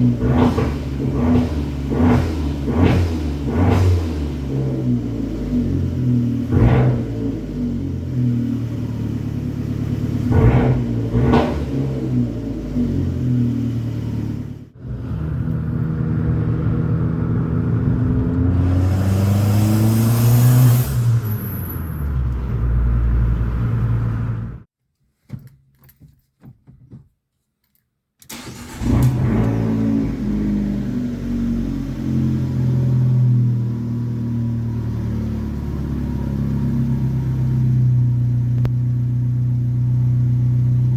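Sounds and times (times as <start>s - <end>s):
car engine revving: 0.0s - 24.7s, 28.3s - 40.9s
exhaust cracks: 10.2s - 12.4s.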